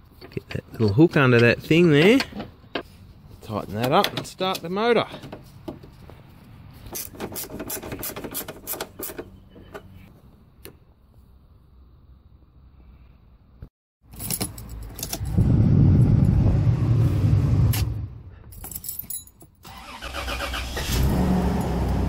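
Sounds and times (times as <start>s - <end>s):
keys jangling: 14.1s - 15.5s, 18.4s - 19.6s
car engine cranking and starting: 19.6s - 22.0s.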